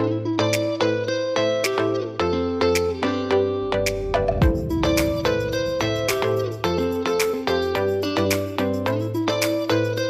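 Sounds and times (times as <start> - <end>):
plucked bright melody: 0.0 - 10.0
bass line: 3.7 - 7.0.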